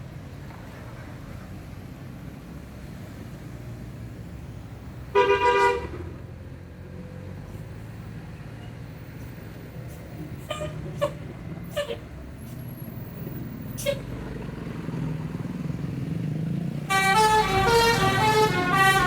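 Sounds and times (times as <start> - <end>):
low rumble of engines: 0.0 - 19.0
bus horn blast: 5.1 - 6.1, 16.9 - 19.0.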